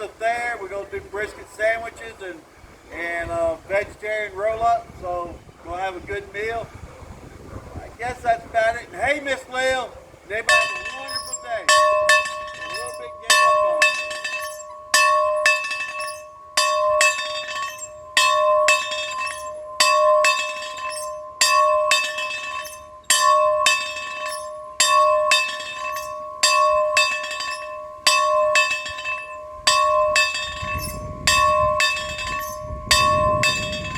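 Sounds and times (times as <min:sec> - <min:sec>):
bell ringing: 0:10.4 - 0:33.9.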